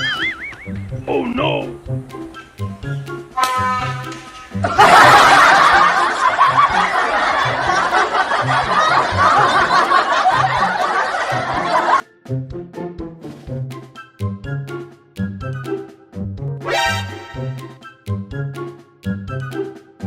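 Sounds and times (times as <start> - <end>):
loud laughter: 0.0 - 0.7, 4.6 - 12.0
background music with beat: 0.0 - 20.0.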